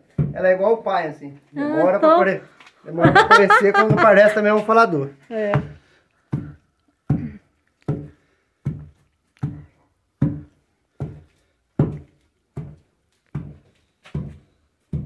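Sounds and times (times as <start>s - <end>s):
pestle pounding in wooden mortar: 5.5s - 15.0s.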